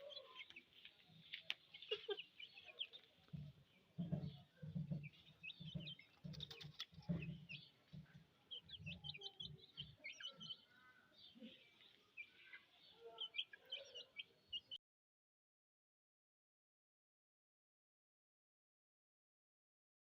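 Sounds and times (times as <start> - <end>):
small birds chirping: 0.0 - 14.8.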